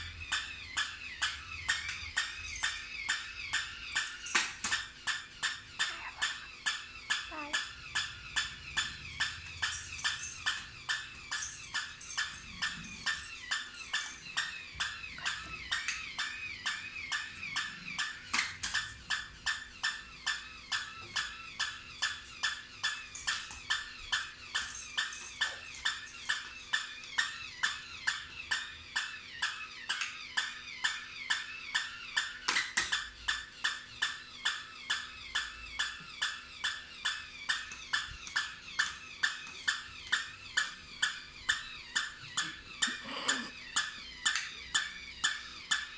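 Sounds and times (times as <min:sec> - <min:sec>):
faint wavering high tone: 0:00.0 - 0:28.7
toy dog clicking mechanically: 0:00.0 - 0:45.9.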